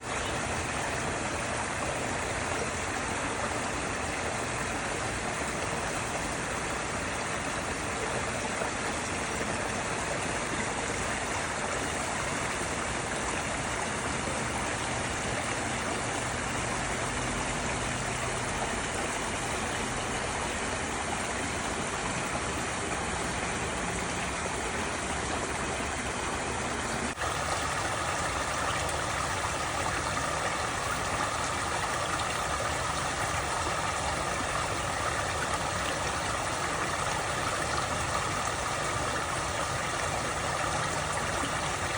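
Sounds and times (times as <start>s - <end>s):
stream water flowing: 0.0s - 41.9s.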